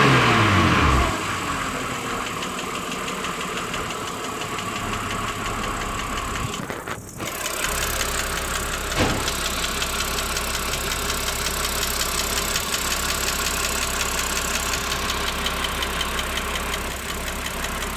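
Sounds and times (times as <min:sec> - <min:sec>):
engine ticking: 0:00.0 - 0:17.9
thump: 0:09.0 - 0:09.4.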